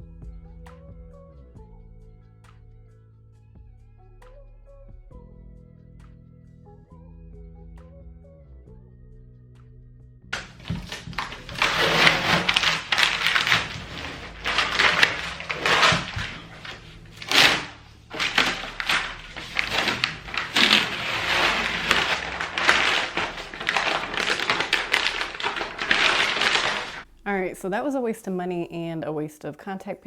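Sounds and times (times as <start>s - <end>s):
contact paper rustling and crinkling: 10.4s - 27.1s.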